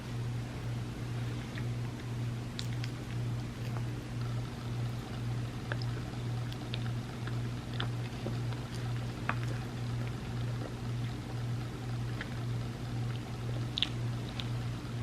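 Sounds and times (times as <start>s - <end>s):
pulsing low hum: 0.0s - 15.0s
wet mouth eating sounds: 1.3s - 15.0s.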